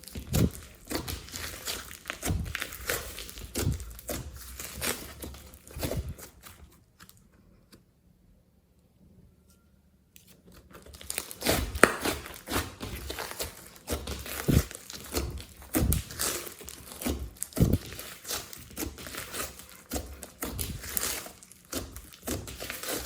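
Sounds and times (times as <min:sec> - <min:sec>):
slime squeezed and stretched: 0:10.9 - 0:23.0.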